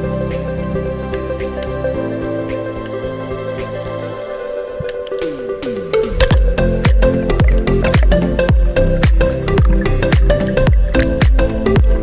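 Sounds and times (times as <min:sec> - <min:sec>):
sustained synth tones: 0:05.8 - 0:12.0.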